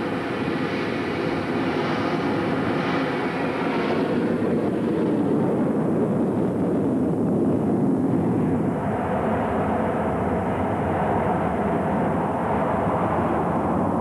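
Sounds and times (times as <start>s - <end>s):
jet engines roaring: 0.0s - 14.0s.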